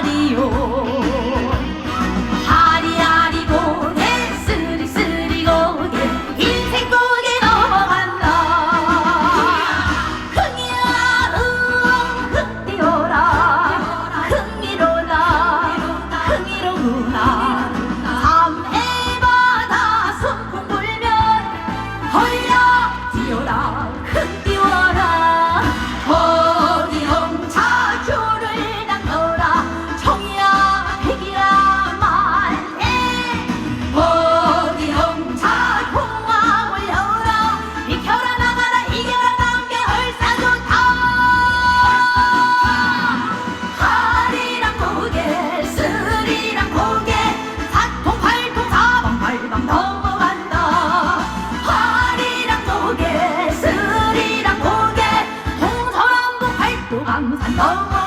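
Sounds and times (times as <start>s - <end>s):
woman singing: 0.0s - 58.0s
loud accompaniment with beat: 24.1s - 55.9s.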